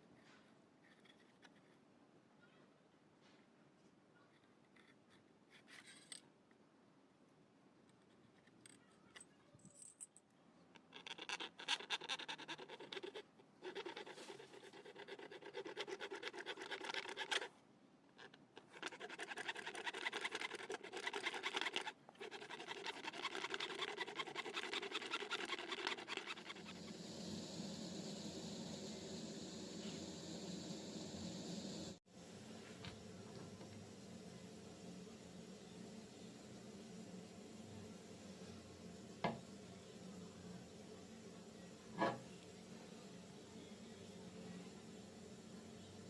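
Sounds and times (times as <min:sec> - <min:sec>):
scratchy scraping by hand: 0:11.2 - 0:17.5, 0:18.2 - 0:26.8.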